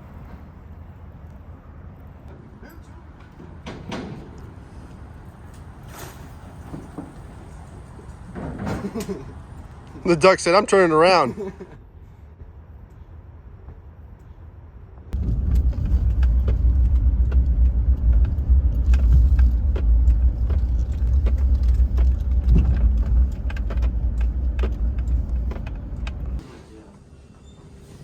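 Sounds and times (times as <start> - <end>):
car rumbling on road: 15.1 - 26.4
light rattles and clicks: 15.2 - 26.4.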